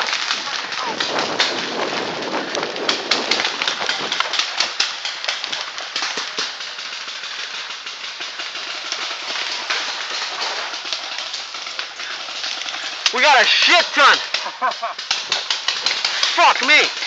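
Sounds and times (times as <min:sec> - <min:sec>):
paintball markers firing: 0:02.5 - 0:07.3.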